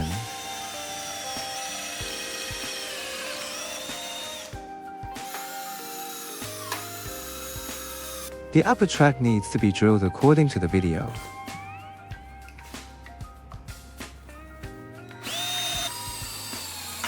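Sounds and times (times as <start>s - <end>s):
electric drill whining: 0.0s - 8.3s, 15.2s - 17.0s.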